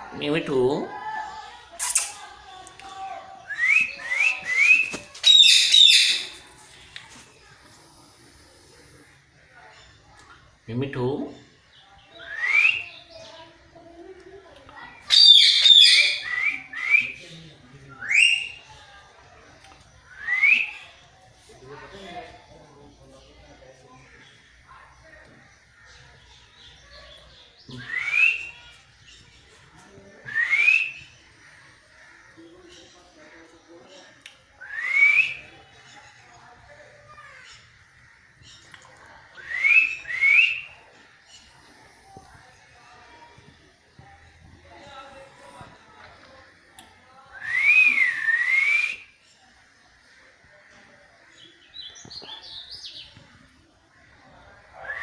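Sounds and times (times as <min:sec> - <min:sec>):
parrot whistling: 0:03.5 - 0:06.4
parrot chirping: 0:03.9 - 0:06.7, 0:15.0 - 0:16.4.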